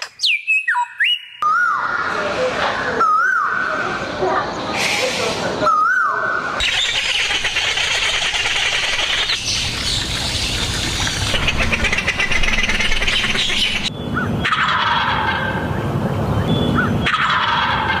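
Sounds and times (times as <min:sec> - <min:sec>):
rapidly pulsing bird calls: 0:05.8 - 0:18.0.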